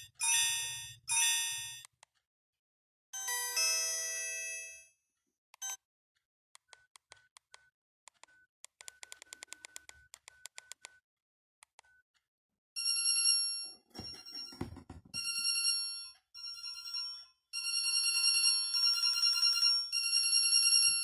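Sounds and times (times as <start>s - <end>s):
ringtone chime: 0.0s - 1.8s, 3.2s - 4.9s, 12.8s - 21.0s
short beeps and clicks: 5.6s - 5.8s.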